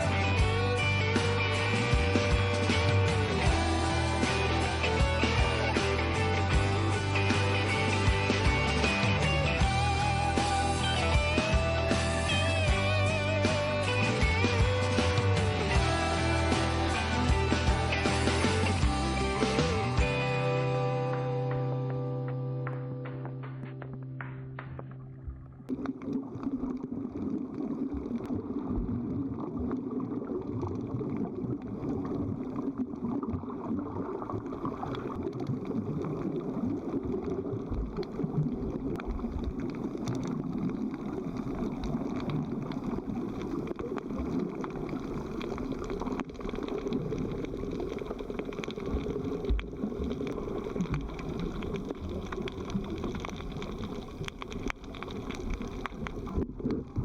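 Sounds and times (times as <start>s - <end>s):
muffled underwater water churning: 0.0s - 20.1s, 24.6s - 57.0s
low underwater thumps: 0.2s - 20.4s, 21.1s - 25.8s.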